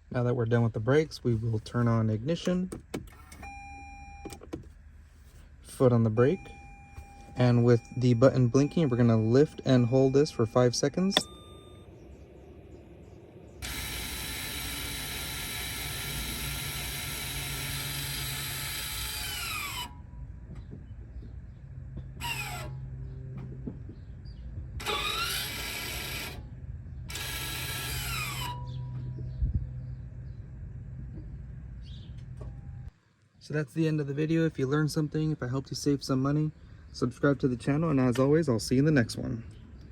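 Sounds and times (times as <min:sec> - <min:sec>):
parking brake motors whirring: 0:01.5 - 0:32.9.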